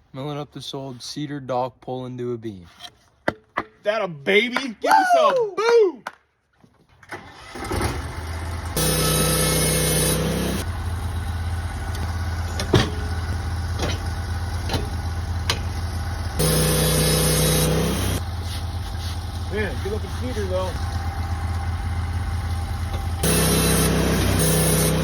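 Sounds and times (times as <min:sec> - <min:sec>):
sawmill engine idling: 0:07.6 - 0:25.0
whine with hiss: 0:23.2 - 0:25.0.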